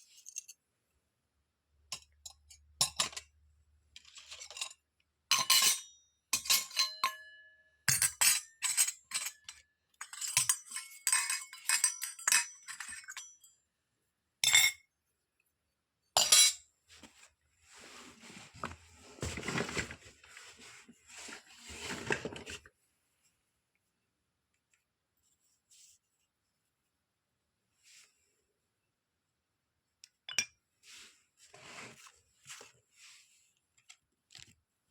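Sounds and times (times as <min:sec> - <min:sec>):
toy kitchen pieces clinking: 0:06.4 - 0:07.2, 0:07.9 - 0:13.5
soft rustling: 0:16.9 - 0:23.4, 0:30.8 - 0:34.5.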